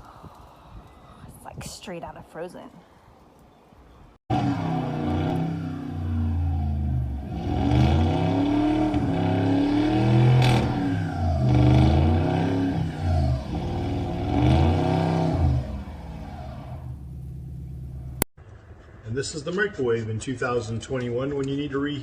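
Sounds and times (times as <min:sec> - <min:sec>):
car engine revving: 0:04.3 - 0:18.3.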